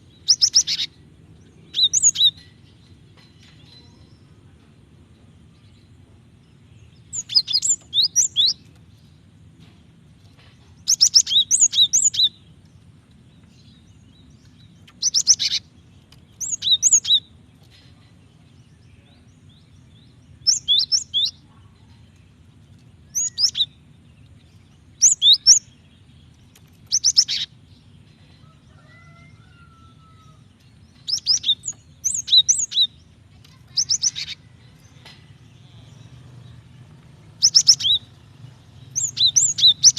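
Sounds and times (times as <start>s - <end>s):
bird rapid high chirps: 0.2s - 1.0s, 1.6s - 2.7s, 7.0s - 8.6s, 10.8s - 12.4s, 14.7s - 15.7s, 16.4s - 17.4s, 20.2s - 21.5s, 23.1s - 23.9s, 24.9s - 27.6s, 30.9s - 36.2s, 37.3s - 39.9s.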